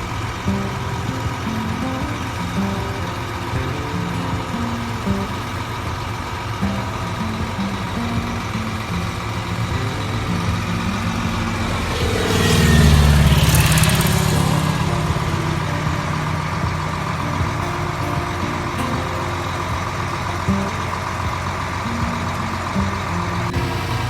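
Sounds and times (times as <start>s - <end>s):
heavy engine running: 0.0s - 24.0s
vehicle passing by: 8.8s - 17.6s.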